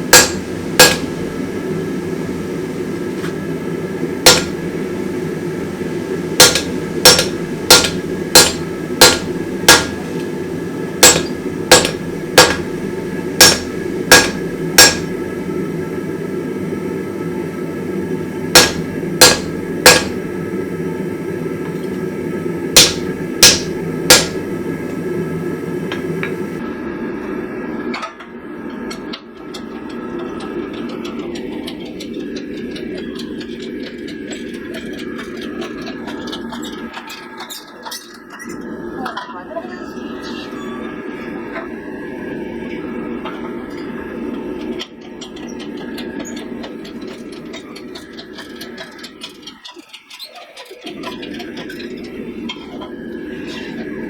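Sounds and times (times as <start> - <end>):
hammer ringing on steel: 4.2 - 4.6, 6.4 - 10.1, 11.0 - 12.8, 13.4 - 15.1, 18.6 - 20.2, 22.8 - 24.4
steady low roar: 50.9 - 54.0.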